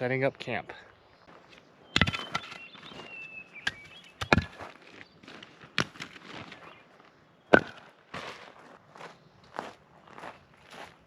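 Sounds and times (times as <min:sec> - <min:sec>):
camping gear knocking: 0:02.0 - 0:03.0, 0:03.6 - 0:04.7, 0:05.7 - 0:06.3, 0:07.5 - 0:07.9.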